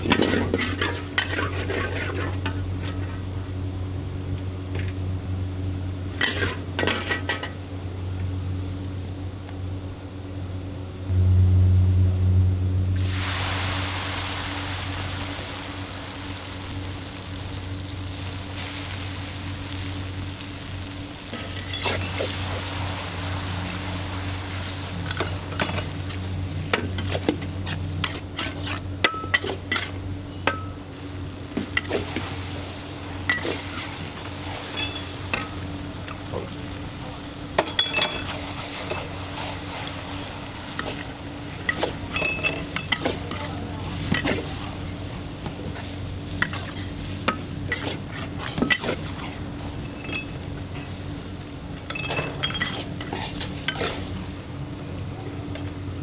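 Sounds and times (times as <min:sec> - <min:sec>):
metal spatula scraping wok: 0:00.0 - 0:03.2, 0:06.2 - 0:07.6, 0:26.8 - 0:30.0, 0:37.6 - 0:51.0, 0:52.0 - 0:54.4
steady low hum: 0:00.0 - 0:56.0
noodles sizzling in a wok: 0:12.9 - 0:30.1, 0:30.8 - 0:55.6.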